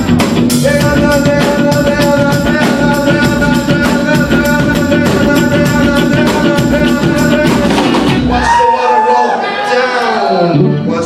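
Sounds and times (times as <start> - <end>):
drum kit beat: 0.0 - 8.6
live rock band playing: 0.0 - 8.8.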